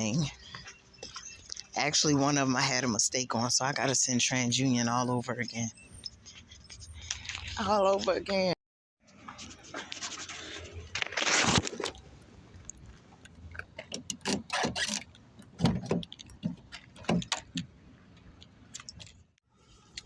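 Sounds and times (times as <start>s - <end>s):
rustling scrape: 9.1s - 12.1s.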